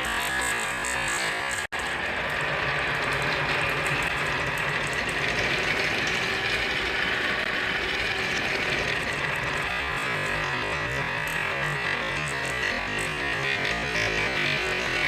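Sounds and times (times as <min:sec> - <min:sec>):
marbles rattling on wooden tracks: 0:02.2 - 0:12.6.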